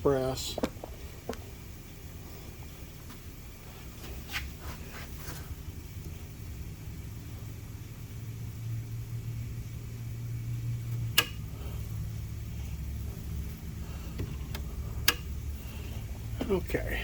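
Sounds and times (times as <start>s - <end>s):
shop machinery humming: 0.0s - 17.0s
sharp click: 11.2s - 11.4s.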